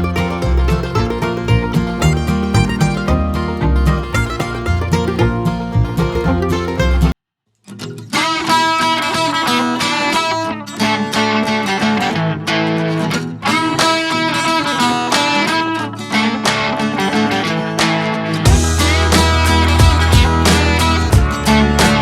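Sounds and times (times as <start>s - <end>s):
plucked guitar music: 0.0s - 22.0s.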